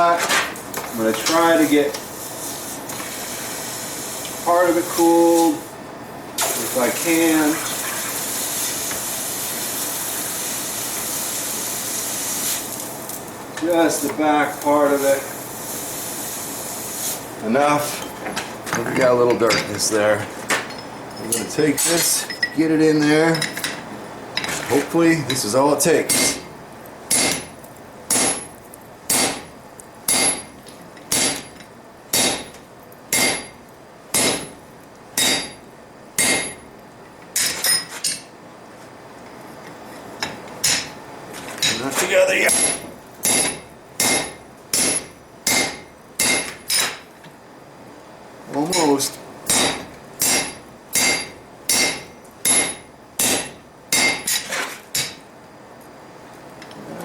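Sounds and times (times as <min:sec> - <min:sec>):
hammer striking steel on anvil: 0:26.1 - 0:26.4, 0:27.1 - 0:27.5, 0:28.1 - 0:28.5, 0:29.1 - 0:29.5, 0:30.1 - 0:30.5, 0:31.1 - 0:32.5, 0:33.1 - 0:33.6, 0:34.2 - 0:34.6, 0:35.2 - 0:35.6, 0:36.2 - 0:36.6, 0:42.5 - 0:47.0, 0:49.5 - 0:55.2.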